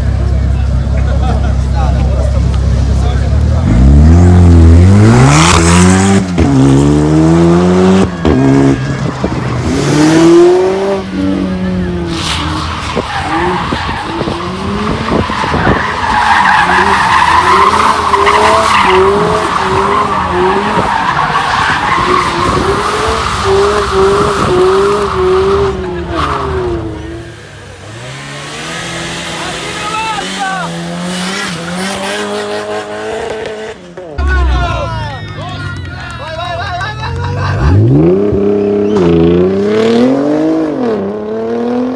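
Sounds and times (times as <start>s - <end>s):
car engine revving: 0.0s - 34.7s, 37.1s - 41.9s
tyre squealing: 11.9s - 32.9s.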